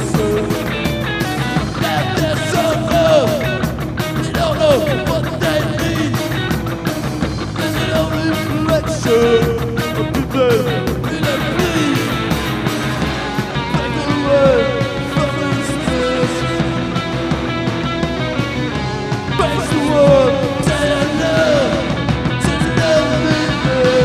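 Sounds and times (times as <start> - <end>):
rock band playing: 0.0 - 24.0.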